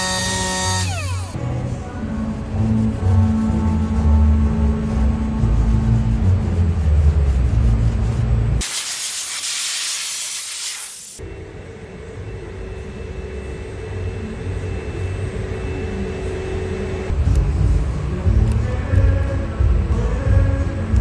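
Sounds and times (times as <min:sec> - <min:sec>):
spray hiss: 0:08.6 - 0:11.2.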